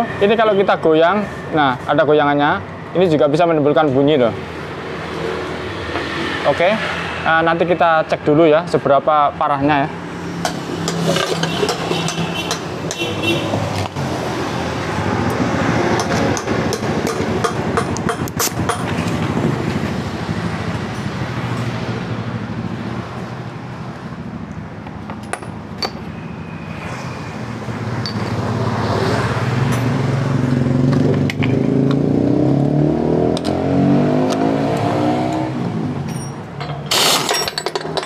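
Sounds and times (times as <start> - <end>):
vehicle engine revving: 28.3 - 36.0.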